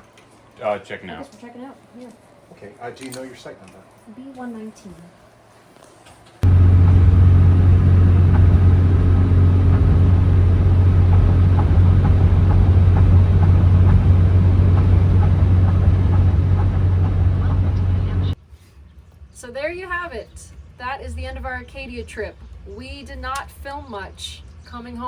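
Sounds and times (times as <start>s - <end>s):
vehicle engine and road noise: 6.4s - 18.4s.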